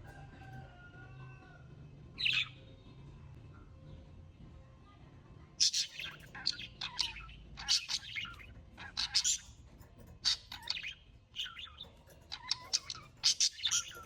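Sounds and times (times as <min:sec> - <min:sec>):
small birds chirping: 0:02.2 - 0:02.8, 0:05.6 - 0:14.0.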